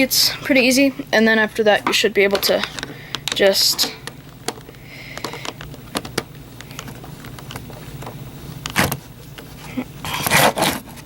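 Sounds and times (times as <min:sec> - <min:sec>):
plastic parts clicking: 0:02.2 - 0:09.5.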